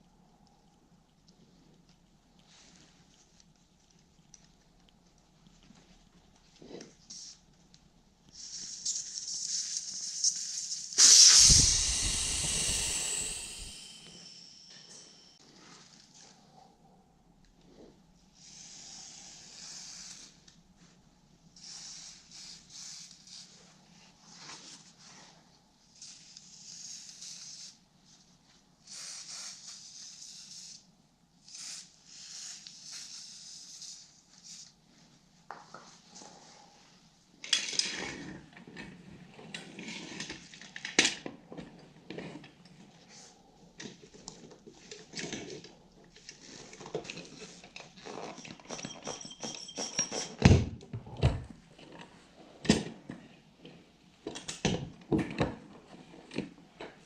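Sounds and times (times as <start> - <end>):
short hissy bursts: 8.4 - 15.3
metallic tool clinks and scrapes: 47.8 - 50.5.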